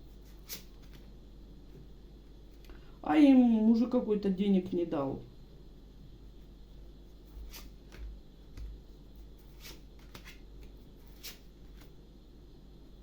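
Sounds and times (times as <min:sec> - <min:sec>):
cards swishing and tapping: 0:07.3 - 0:12.0.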